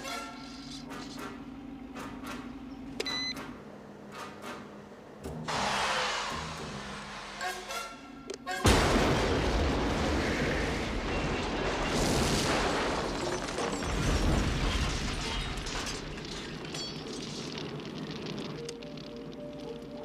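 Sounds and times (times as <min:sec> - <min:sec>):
film score music: 0:00.0 - 0:08.7, 0:18.3 - 0:20.0
explosion blast: 0:08.6 - 0:16.6
debris clatter: 0:08.7 - 0:20.0.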